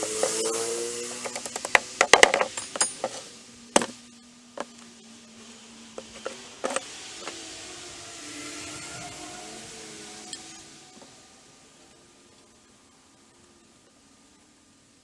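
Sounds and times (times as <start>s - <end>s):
wooden knocks and clatter: 1.2s - 3.9s, 6.0s - 7.4s.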